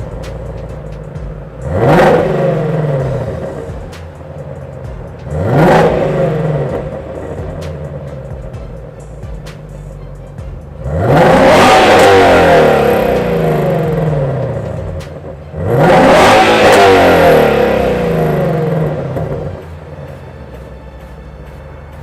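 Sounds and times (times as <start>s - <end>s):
car engine revving: 0.0s - 22.0s.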